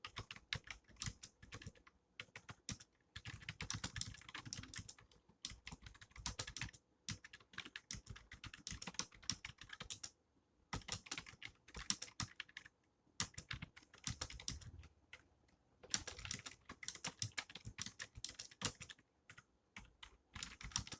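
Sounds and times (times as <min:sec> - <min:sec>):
fast typing on keyboard: 0:00.0 - 0:15.2, 0:15.9 - 0:20.9.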